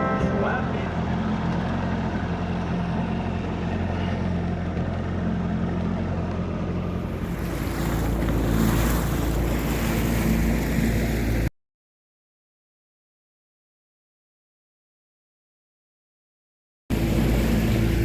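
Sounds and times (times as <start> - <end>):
boat motor running: 0.0 - 11.5, 16.9 - 18.0
wind: 0.0 - 11.5, 16.9 - 18.0.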